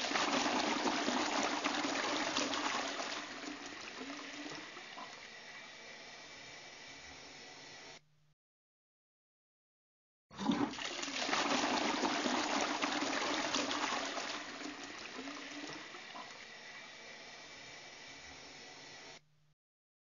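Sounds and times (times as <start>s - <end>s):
tank refilling trickle: 0.0s - 5.3s, 10.3s - 16.5s
toilet flushing: 0.0s - 5.3s, 10.3s - 16.5s.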